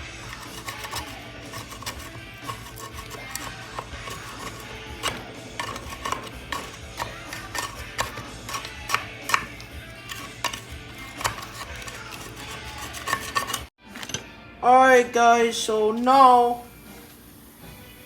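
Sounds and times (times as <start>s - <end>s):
scraper scraping dirt off metal: 0.0s - 13.7s.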